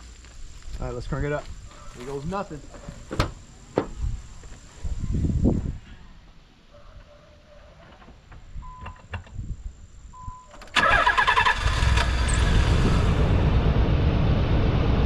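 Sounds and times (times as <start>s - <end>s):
starter motor cranking: 10.7s - 12.6s.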